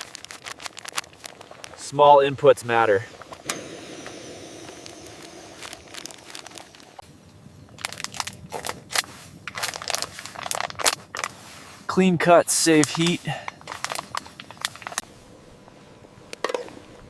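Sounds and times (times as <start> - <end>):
soft steady hiss: 0.0 - 8.3
crackling crunching clicks: 0.0 - 11.4, 12.6 - 15.1.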